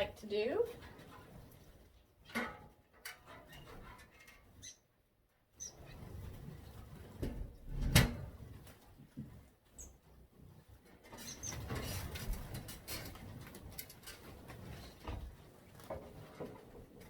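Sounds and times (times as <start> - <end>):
knocks and rustles of handling: 0.0 - 17.0
small birds chirping: 4.4 - 4.9, 5.5 - 6.2, 9.6 - 10.2, 11.1 - 12.0.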